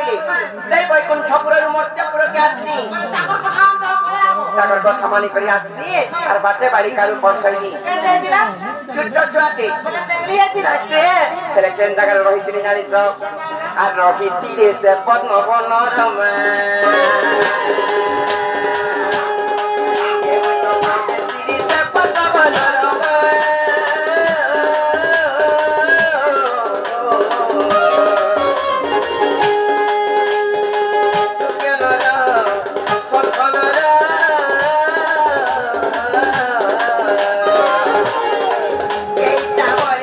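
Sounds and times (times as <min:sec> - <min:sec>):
hand drum beats: 0:16.4 - 0:40.0.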